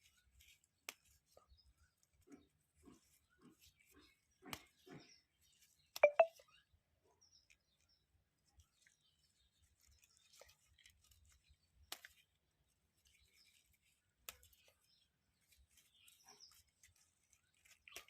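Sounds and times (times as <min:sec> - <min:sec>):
faint high chirps: 0:06.0 - 0:06.3
stems snapping: 0:11.9 - 0:12.3, 0:14.2 - 0:14.7.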